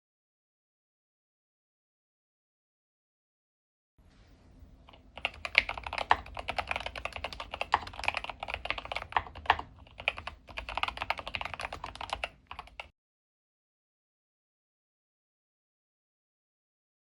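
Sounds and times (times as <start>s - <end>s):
keyboard typing clacks: 4.9s - 12.9s.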